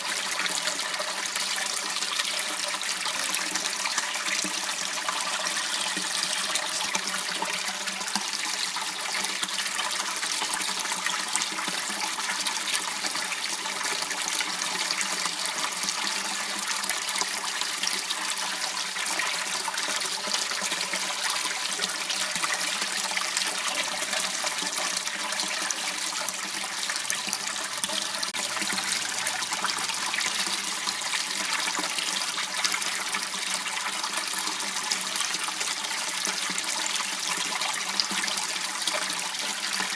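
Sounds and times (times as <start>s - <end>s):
water running in a waterway: 0.0s - 39.9s.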